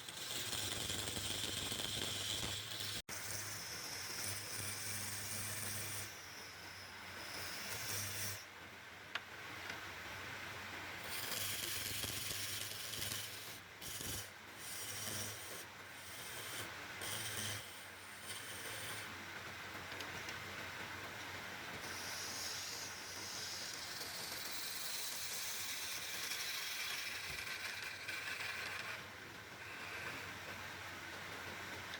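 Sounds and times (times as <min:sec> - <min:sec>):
tool scraping spinning wood: 0:00.0 - 0:08.5, 0:11.0 - 0:19.1, 0:21.8 - 0:30.6.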